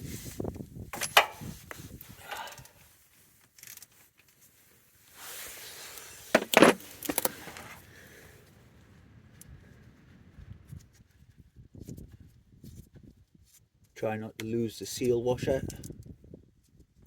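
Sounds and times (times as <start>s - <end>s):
spanner clinking and scraping: 1.0s - 2.7s.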